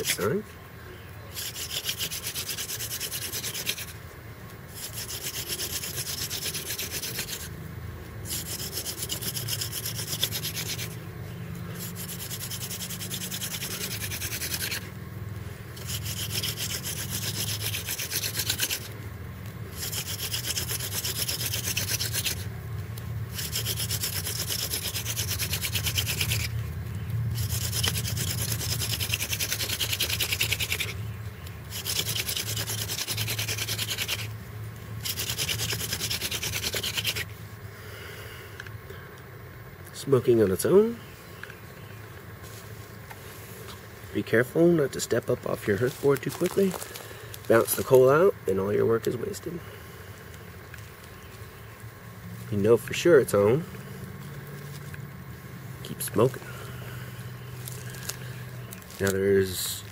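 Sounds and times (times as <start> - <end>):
wooden spindle scraping hearth board: 0.0 - 0.4, 1.3 - 7.6, 8.2 - 15.0, 15.7 - 22.5, 23.3 - 37.4, 41.4 - 49.5, 55.9 - 59.9.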